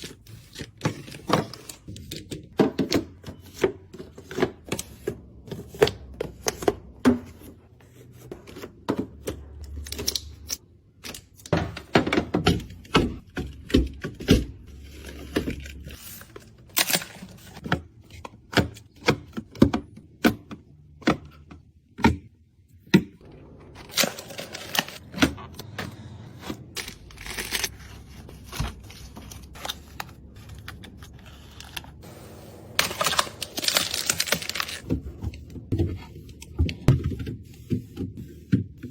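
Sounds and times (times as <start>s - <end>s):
packaging crinkling: 32.6s - 34.9s.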